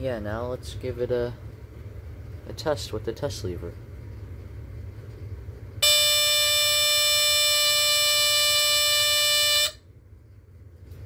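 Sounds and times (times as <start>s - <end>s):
smoke alarm squeal: 5.8s - 9.8s.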